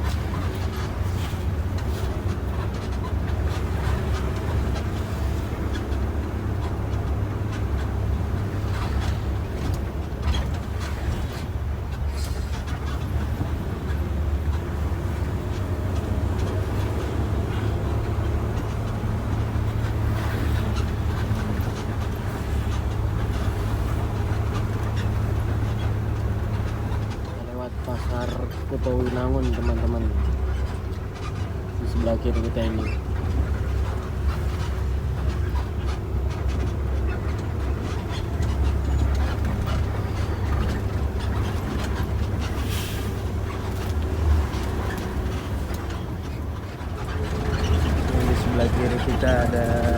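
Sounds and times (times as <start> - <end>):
bus engine and road noise drone: 0.0 - 49.9
faint clicks and rattles: 43.2 - 49.9.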